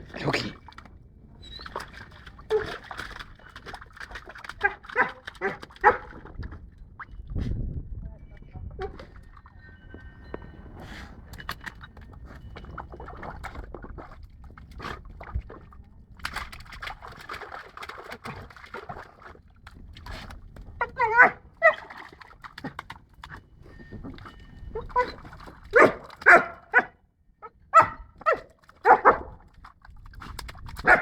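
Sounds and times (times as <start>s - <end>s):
dog blowing bubbles in water: 0.0s - 6.7s, 10.9s - 20.8s, 29.2s - 31.0s.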